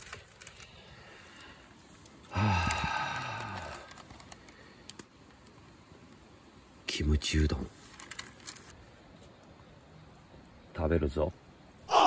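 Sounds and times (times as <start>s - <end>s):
man sighing: 2.3s - 4.0s.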